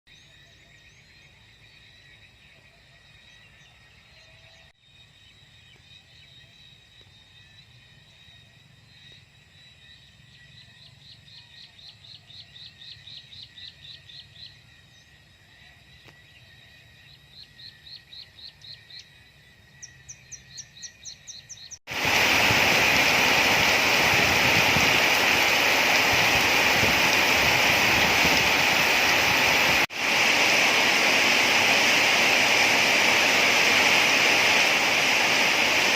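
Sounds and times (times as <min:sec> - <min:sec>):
heavy rain hissing: 0:21.9 - 0:35.9.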